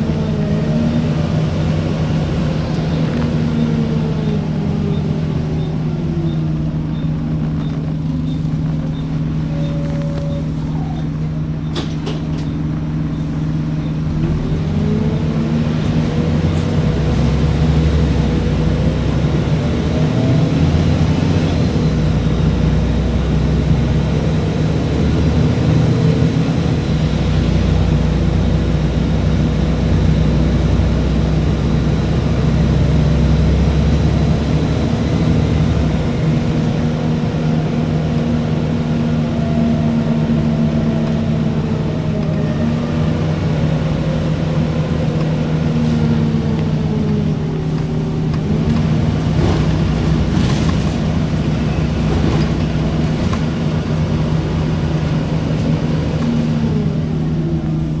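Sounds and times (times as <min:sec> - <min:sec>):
vehicle engine rumbling: 0:00.0 - 0:58.0.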